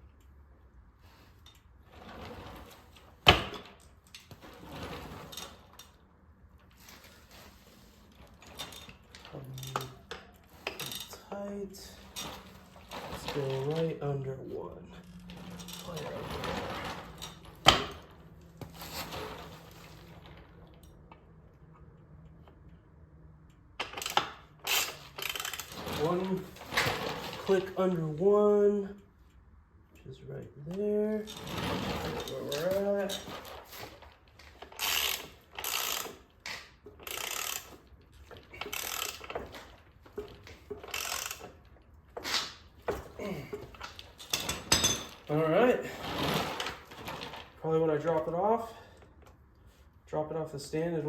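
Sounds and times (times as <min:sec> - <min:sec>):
ratchet wrench clicking: 0:23.8 - 0:25.7, 0:34.8 - 0:36.2, 0:37.0 - 0:37.8, 0:38.6 - 0:39.3, 0:40.9 - 0:41.5
metallic clank of hand tools: 0:44.3 - 0:45.3.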